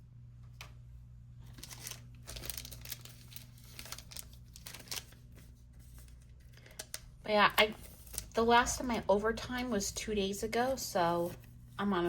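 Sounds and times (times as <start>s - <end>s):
plastic packaging crinkling: 1.4s - 9.8s.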